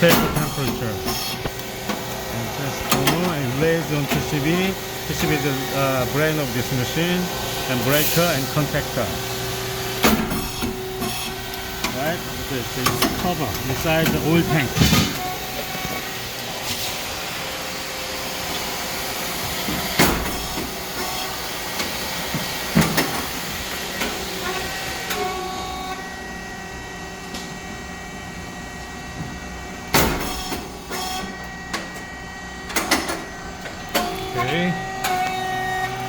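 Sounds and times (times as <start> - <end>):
motor and pump hum: 0.0 - 36.0
sharp bangs: 12.8 - 15.5.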